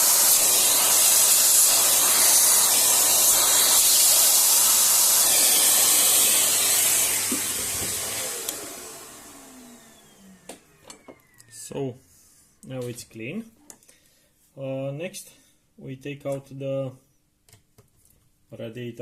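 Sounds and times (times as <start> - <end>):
compressed air hissing: 0.0 - 7.4.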